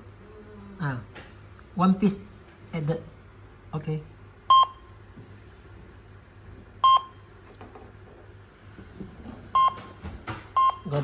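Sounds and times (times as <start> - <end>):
short electronic beeps: 4.5 - 4.8, 6.8 - 7.2.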